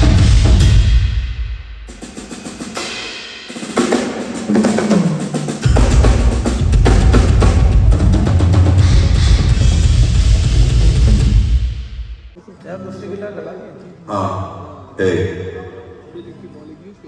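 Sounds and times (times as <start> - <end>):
drum kit playing: 0.0 - 12.4.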